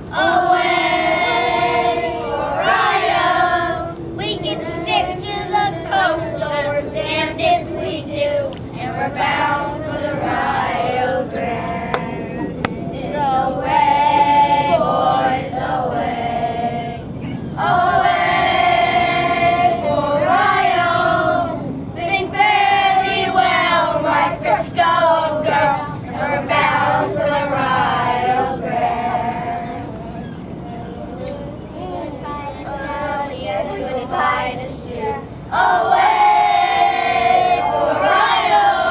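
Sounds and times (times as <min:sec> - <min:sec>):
children singing in unison: 0:00.0 - 0:30.2, 0:31.1 - 0:38.9.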